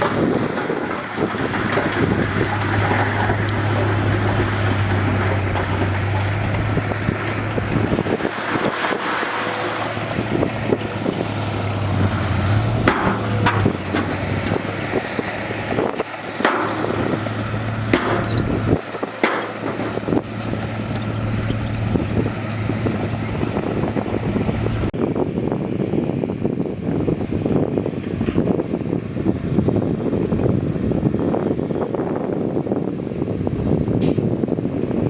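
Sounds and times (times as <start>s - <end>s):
diesel machinery running: 0.0s - 35.0s
sharp metal clanks and knocks: 12.5s - 21.6s.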